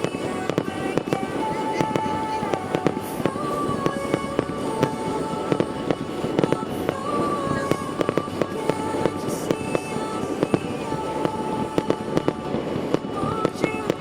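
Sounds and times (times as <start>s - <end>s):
fireworks bangs and crackles: 0.0s - 14.0s
music with held notes: 0.0s - 14.0s.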